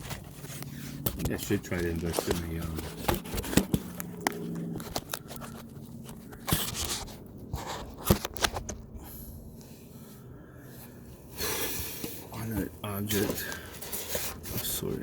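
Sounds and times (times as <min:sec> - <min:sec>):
clicks and knocks of handling objects: 0:00.0 - 0:08.8.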